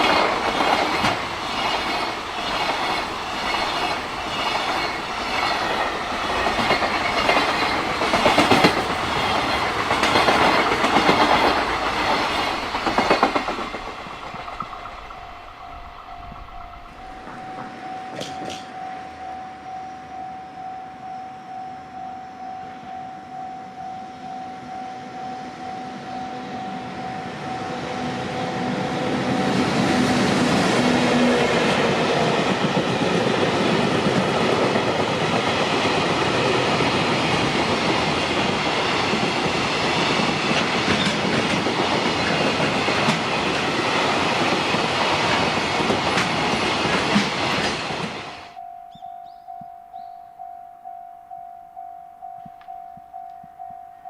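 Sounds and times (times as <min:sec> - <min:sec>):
freight train clattering over rails: 0:00.0 - 0:18.9, 0:28.9 - 0:48.6
level crossing bell ringing: 0:15.0 - 0:27.9, 0:48.5 - 0:54.0.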